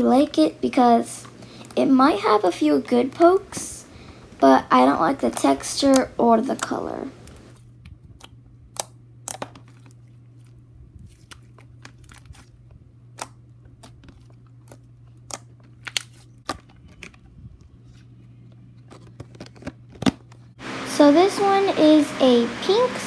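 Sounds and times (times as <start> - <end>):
steady low hum: 20.6 - 23.0.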